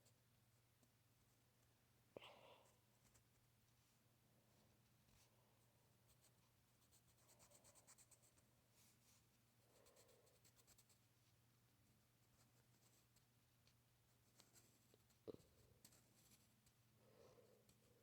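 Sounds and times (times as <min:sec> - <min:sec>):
faint low hum: 0:00.0 - 0:18.0
scratching of drawing strokes: 0:06.0 - 0:11.1.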